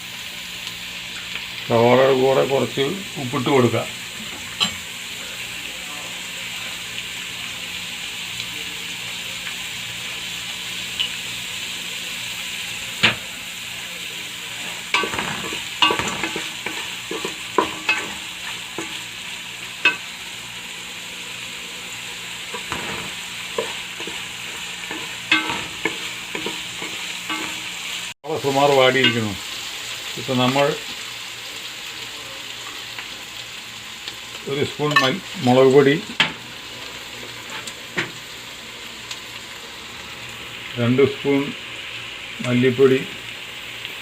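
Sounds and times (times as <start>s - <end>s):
onions sizzling in oil: 0.0s - 44.0s
spoon scraping and knocking pan: 14.6s - 19.1s, 19.8s - 20.1s, 22.4s - 27.9s.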